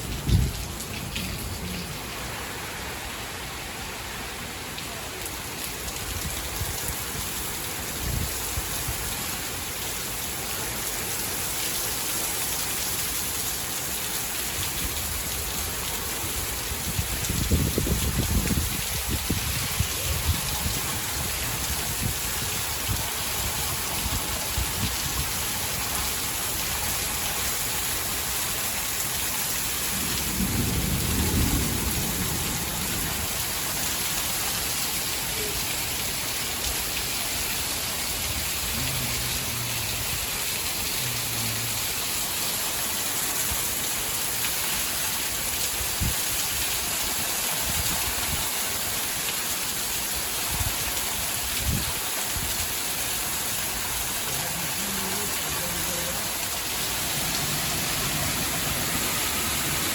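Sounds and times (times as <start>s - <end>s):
low rumble of thunder: 0.0s - 2.2s, 29.8s - 33.8s
heavy rain falling: 0.0s - 59.9s.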